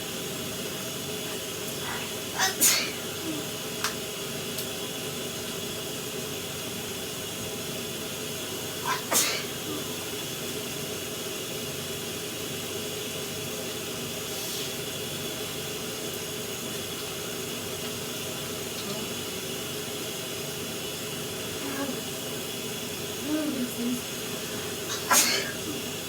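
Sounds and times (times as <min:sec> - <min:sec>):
shower spray running: 0:00.0 - 0:26.0
person sneezing: 0:01.9 - 0:03.6, 0:08.8 - 0:10.0, 0:24.6 - 0:25.9.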